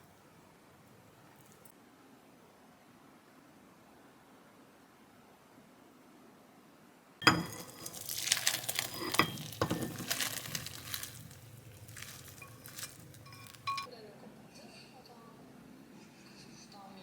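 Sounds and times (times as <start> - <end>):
food frying hiss: 7.2 - 13.8
dishes and utensils clattering: 7.2 - 13.9.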